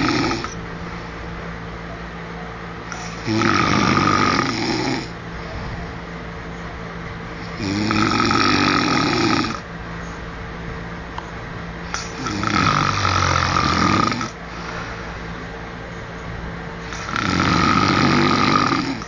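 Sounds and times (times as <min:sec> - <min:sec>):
man snoring: 0:00.0 - 0:00.6, 0:03.0 - 0:05.2, 0:07.4 - 0:09.6, 0:12.0 - 0:14.4, 0:16.9 - 0:19.0.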